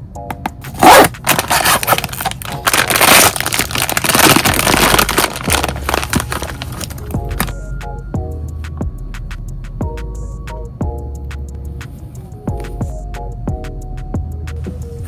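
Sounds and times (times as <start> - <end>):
soft background music: 0.0 - 15.0
plastic wrapping crackling: 0.6 - 7.7.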